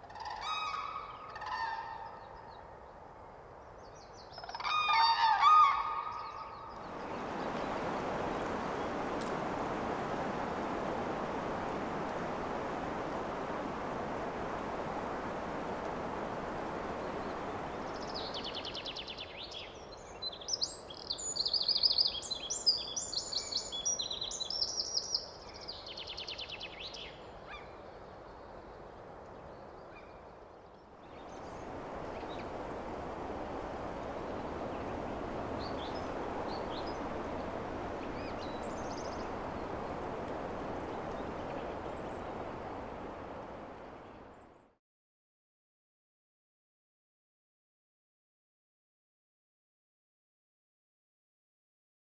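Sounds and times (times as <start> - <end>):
wind through pine trees: 0.0 - 44.8
lively birdsong: 16.8 - 44.6.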